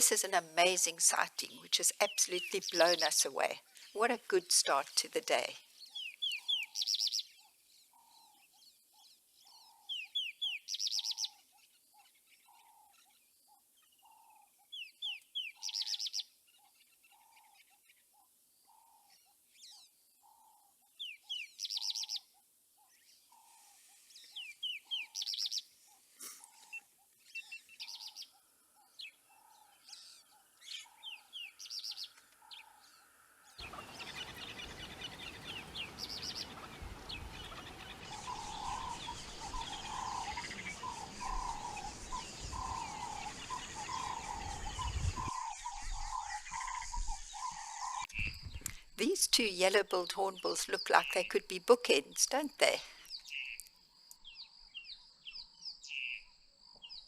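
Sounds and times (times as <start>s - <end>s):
birds chirping and trilling: 0.0s - 57.0s
low repeated bird notes: 33.6s - 53.6s.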